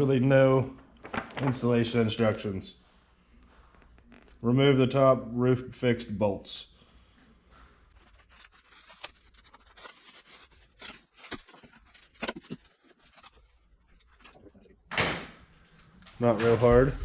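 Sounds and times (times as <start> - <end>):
packaging rustling and scraping: 7.9 - 14.7.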